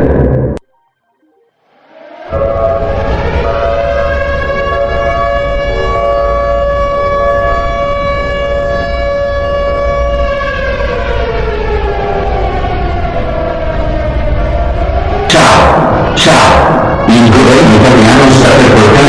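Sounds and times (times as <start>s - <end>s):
low rumble: 0.0s - 0.7s, 11.9s - 19.0s
warning siren winding down: 0.0s - 19.0s.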